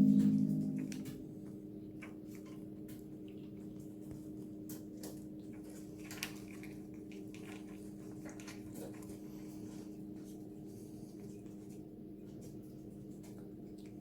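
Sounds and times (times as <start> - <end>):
steady low hum: 0.0 - 1.4
animals licking and chewing: 3.3 - 14.0.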